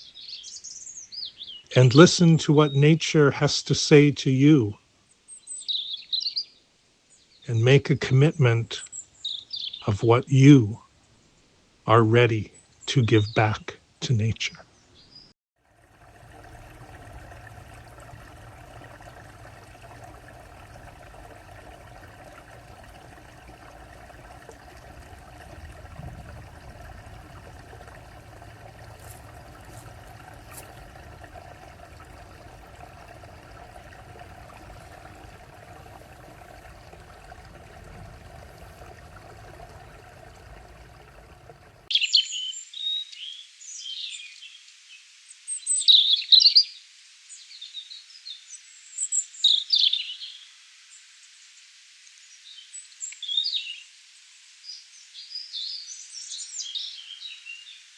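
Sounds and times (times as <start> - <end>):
steady background wash: 15.8 - 41.9
songbirds chirping and trilling: 16.0 - 44.0.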